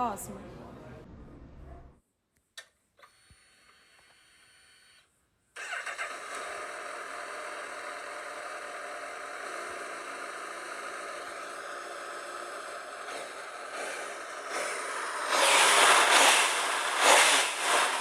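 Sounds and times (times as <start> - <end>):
motorcycle engine running: 5.6 - 18.0.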